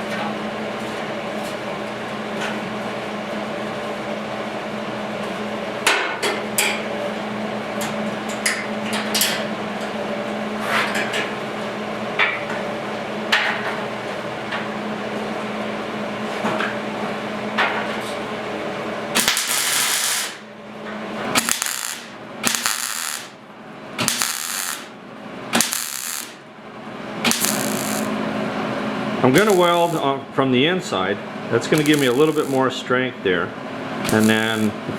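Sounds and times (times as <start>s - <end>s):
steady shop hum: 0.0s - 34.9s
power tool on sheet metal: 19.2s - 20.4s, 21.4s - 23.4s, 24.0s - 24.9s, 25.6s - 26.4s, 27.3s - 28.2s, 29.4s - 30.1s, 31.7s - 32.6s, 34.0s - 34.8s.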